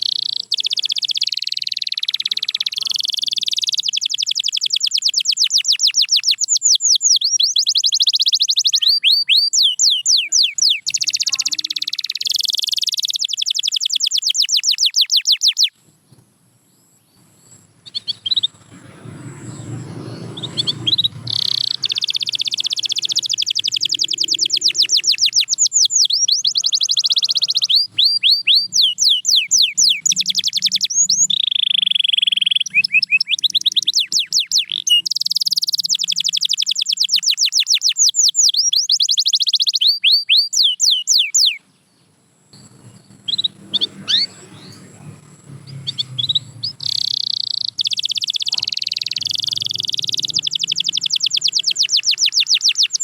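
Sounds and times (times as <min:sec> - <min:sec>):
canary singing trills: 0:00.0 - 0:15.8, 0:16.6 - 0:53.0
low rumbling noise: 0:17.2 - 0:25.3, 0:42.5 - 0:47.0.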